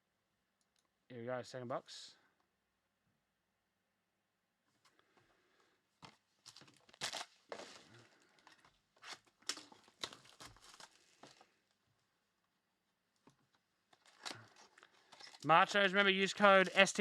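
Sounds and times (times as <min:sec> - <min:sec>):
plastic wrapping tearing and crinkling: 0:06.4 - 0:11.6, 0:13.9 - 0:15.4, 0:16.4 - 0:17.0.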